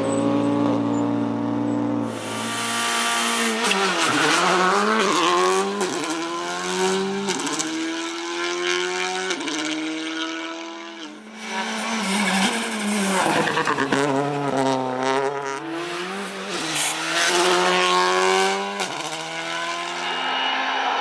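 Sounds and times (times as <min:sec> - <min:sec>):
rally car engine at full throttle: 0:00.0 - 0:21.0.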